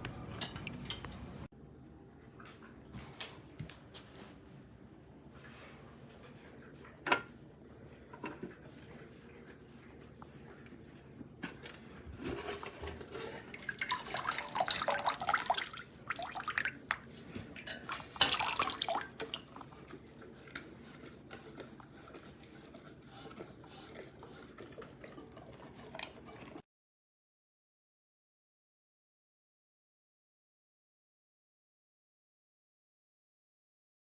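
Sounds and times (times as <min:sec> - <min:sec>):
faint water trickling: 0:07.6 - 0:26.6.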